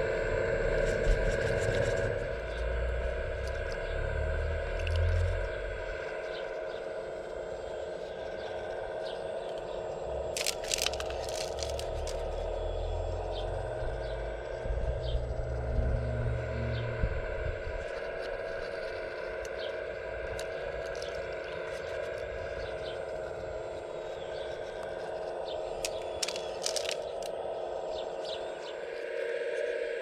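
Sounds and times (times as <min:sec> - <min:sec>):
low rumble: 0:00.0 - 0:30.0
clicks and scrapes of stones: 0:00.8 - 0:02.7, 0:04.7 - 0:05.4, 0:09.4 - 0:12.4, 0:18.0 - 0:27.4.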